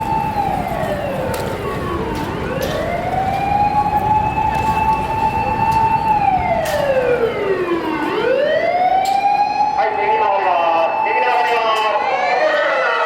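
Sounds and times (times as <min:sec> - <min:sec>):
fire engine sirens wailing: 0:00.0 - 0:13.0.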